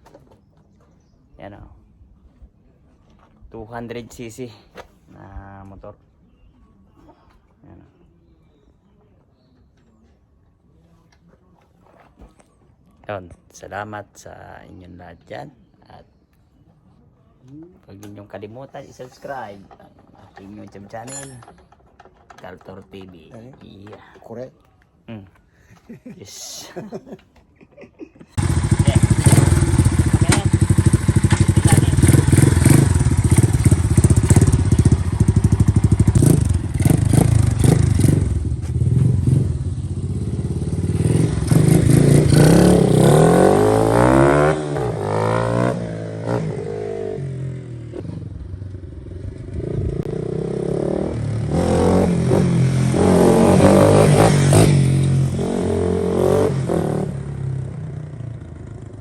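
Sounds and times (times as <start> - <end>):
motorcycle engine revving: 28.4 - 59.0.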